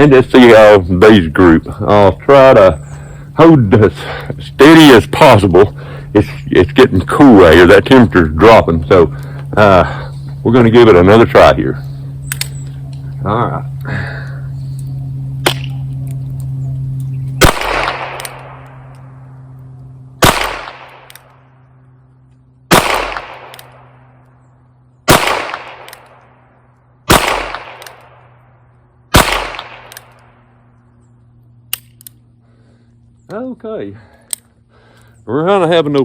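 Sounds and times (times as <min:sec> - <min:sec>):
revolver shots echoing: 0:17.4 - 0:18.9, 0:20.2 - 0:21.4, 0:22.7 - 0:24.2, 0:25.0 - 0:26.4, 0:27.1 - 0:28.4, 0:29.1 - 0:30.3.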